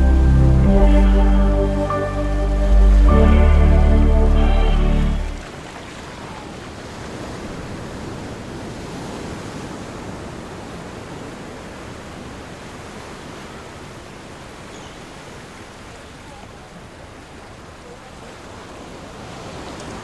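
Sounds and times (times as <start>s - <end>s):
ocean waves washing: 0.0s - 14.0s.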